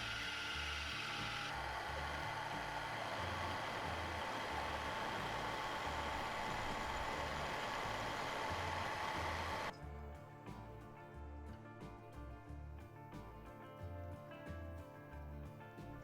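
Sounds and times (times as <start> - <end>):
power tool whirring: 0.0 - 9.7
background music with bass: 0.0 - 16.0.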